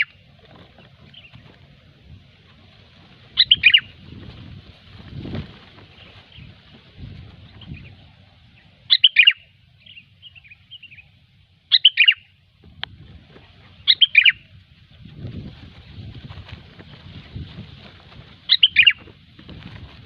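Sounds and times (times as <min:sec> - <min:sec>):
bird calling: 0:00.0 - 0:01.6, 0:03.2 - 0:04.2, 0:07.4 - 0:12.4, 0:13.4 - 0:14.6, 0:18.2 - 0:19.2
soft bird chirps: 0:03.4 - 0:04.0, 0:07.4 - 0:12.4, 0:13.7 - 0:14.6, 0:18.5 - 0:19.1.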